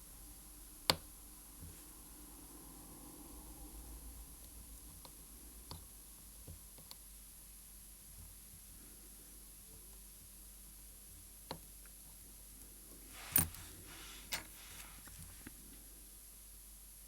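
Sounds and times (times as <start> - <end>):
handling rustle: 13.1 - 15.6
tools clicking on a watch: 13.3 - 13.6.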